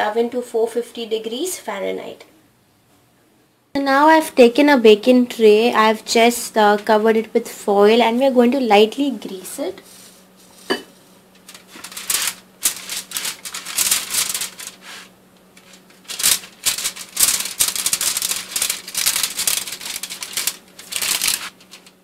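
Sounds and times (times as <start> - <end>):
aluminium foil crinkling: 10.4 - 22.0.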